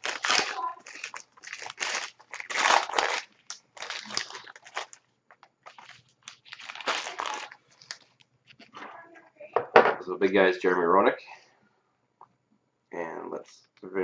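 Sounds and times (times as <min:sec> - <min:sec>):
plastic wrapper crinkling: 0:00.0 - 0:08.8.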